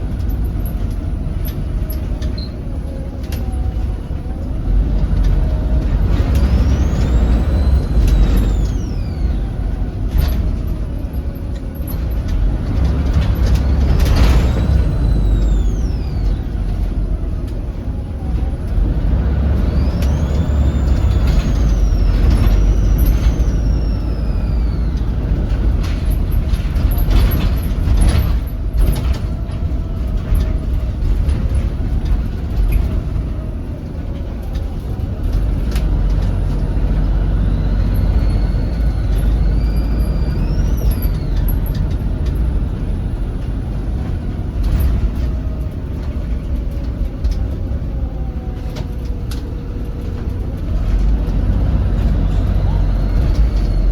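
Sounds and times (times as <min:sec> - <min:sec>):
bus diesel engine rumbling: 0:00.0 - 0:53.9
turbocharger whistling: 0:04.9 - 0:29.4, 0:34.9 - 0:43.1, 0:50.7 - 0:53.9.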